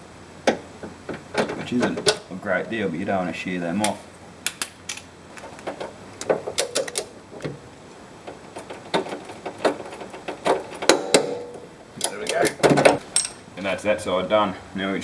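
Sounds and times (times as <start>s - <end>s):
socket wrench clicking: 6.2s - 7.1s
metallic clinks: 13.1s - 13.5s.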